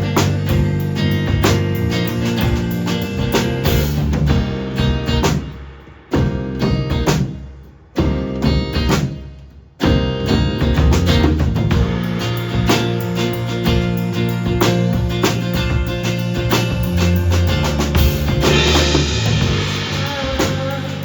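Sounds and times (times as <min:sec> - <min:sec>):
live band playing: 0:00.0 - 0:05.6, 0:09.9 - 0:21.0
band accented hits: 0:00.0 - 0:09.2, 0:09.8 - 0:20.7.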